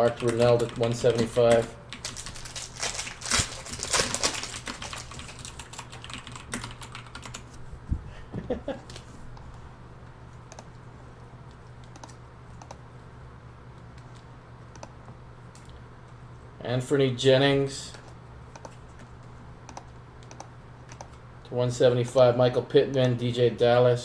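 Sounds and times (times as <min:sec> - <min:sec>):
typing on computer keyboard: 0:00.0 - 0:02.4, 0:03.0 - 0:07.5, 0:11.8 - 0:12.8, 0:19.7 - 0:21.2
steady low hum: 0:00.0 - 0:24.0.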